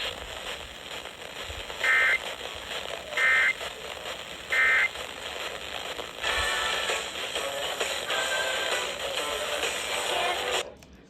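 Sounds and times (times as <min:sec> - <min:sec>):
radio hiss: 0:00.0 - 0:10.7
loud noisy signal: 0:01.7 - 0:02.4, 0:03.1 - 0:03.8, 0:04.5 - 0:05.2
warbling data tones: 0:04.5 - 0:05.0.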